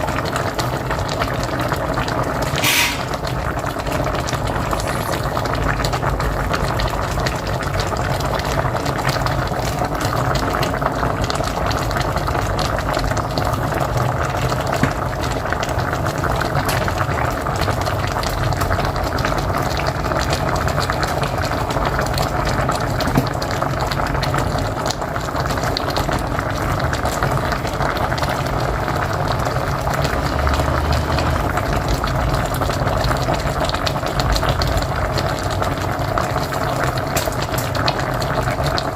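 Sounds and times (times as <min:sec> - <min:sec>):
stew bubbling at a boil: 0:00.0 - 0:38.9.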